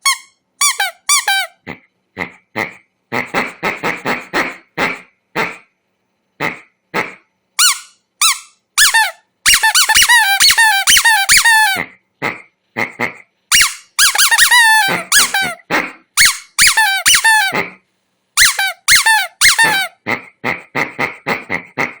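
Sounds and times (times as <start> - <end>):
squeaky dog toy: 0.0 - 1.6, 7.6 - 11.9, 13.5 - 17.7, 18.4 - 20.0.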